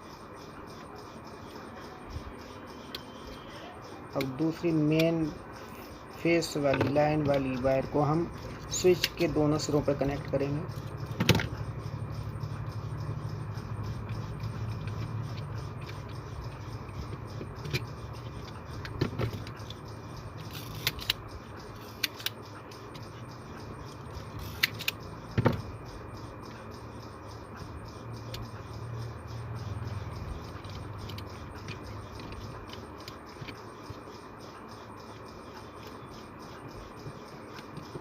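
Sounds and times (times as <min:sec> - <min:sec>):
steady low hum: 0:00.0 - 0:38.0
light clicks and taps of tools: 0:02.8 - 0:26.8, 0:29.6 - 0:34.1.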